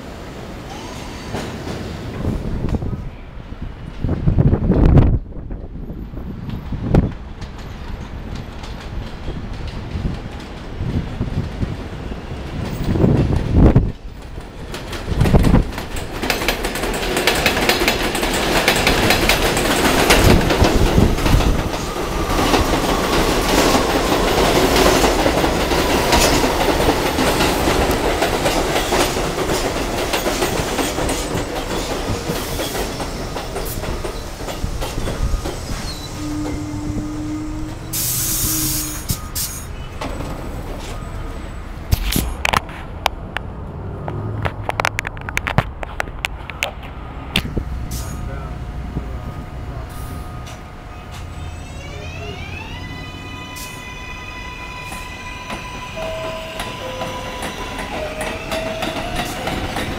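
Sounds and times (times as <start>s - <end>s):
subway train running past: 0.0s - 59.9s
wheels clicking over rail joints: 6.4s - 11.8s, 12.5s - 36.7s, 54.8s - 59.9s.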